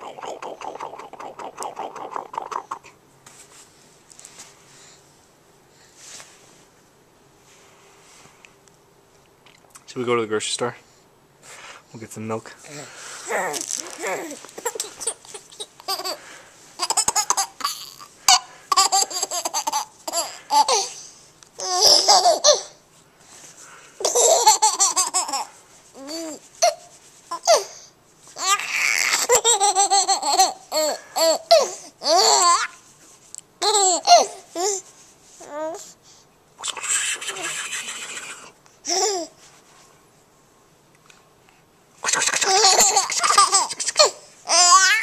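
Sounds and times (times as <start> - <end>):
adult making silly vocal noises: 0.0 - 3.0, 36.6 - 38.5, 42.0 - 44.1
baby laughing and babbling: 12.7 - 16.2, 16.8 - 21.0, 21.6 - 22.8, 24.0 - 27.8, 28.4 - 32.8, 33.6 - 34.8, 38.8 - 39.4, 42.0 - 45.0.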